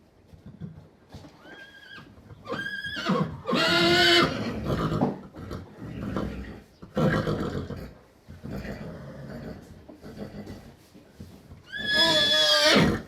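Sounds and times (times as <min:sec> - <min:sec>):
horse whinnying: 0:01.4 - 0:10.5, 0:11.7 - 0:13.0.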